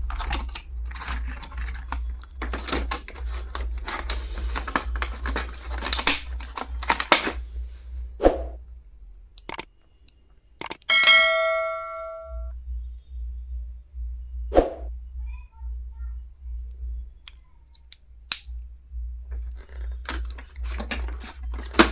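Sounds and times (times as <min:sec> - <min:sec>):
stationery rustling and clicking: 0:00.0 - 0:08.2, 0:09.3 - 0:11.2, 0:17.3 - 0:21.9
sharp ringing metallic clang: 0:10.9 - 0:12.5.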